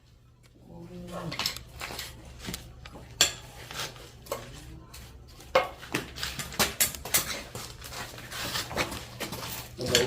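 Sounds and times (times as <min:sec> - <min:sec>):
metal tools clinking and knocking: 0:05.5 - 0:07.9, 0:08.7 - 0:10.0.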